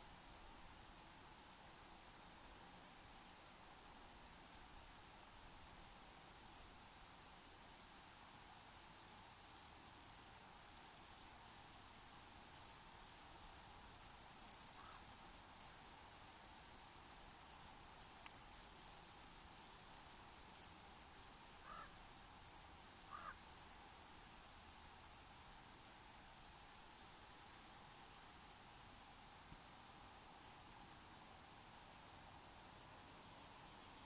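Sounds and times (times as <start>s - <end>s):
faint hiss: 0.0s - 34.0s
cricket chirping: 8.0s - 28.6s.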